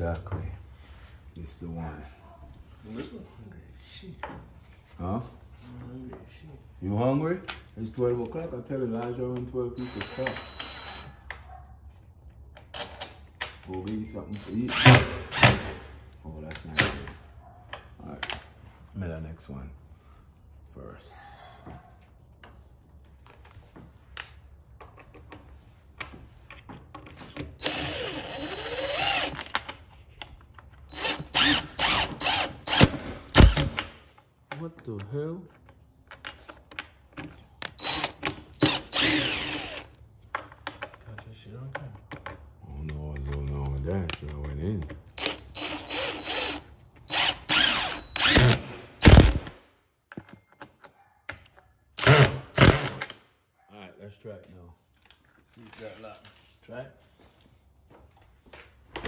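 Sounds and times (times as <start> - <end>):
cordless drill driving a screw: 9.8 - 11.1, 14.3 - 15.8, 27.6 - 29.6, 30.9 - 33.8, 37.7 - 40.0, 45.2 - 49.5, 52.0 - 53.2.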